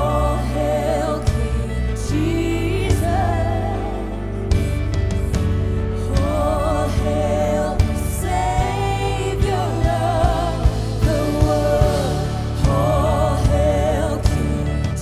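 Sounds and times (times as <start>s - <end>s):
band with bass and drums: 0.0s - 15.0s
person singing with vibrato: 5.6s - 15.0s.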